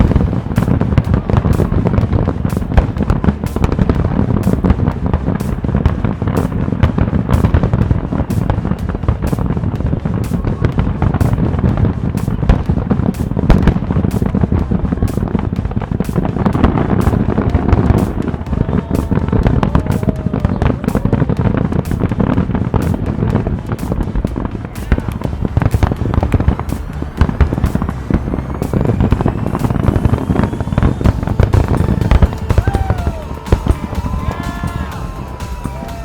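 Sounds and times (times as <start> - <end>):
fireworks bangs and crackles: 0.0 - 36.0
rising firework whistle: 10.1 - 24.0, 24.8 - 36.0.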